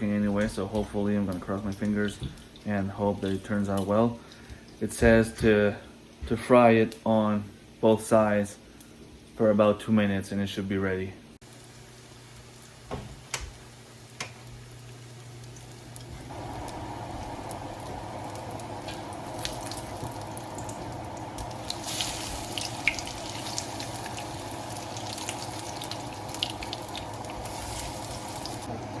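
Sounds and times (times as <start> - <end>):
fritters sizzling in oil: 11.4 - 28.7
oil popping crackles: 11.4 - 28.7.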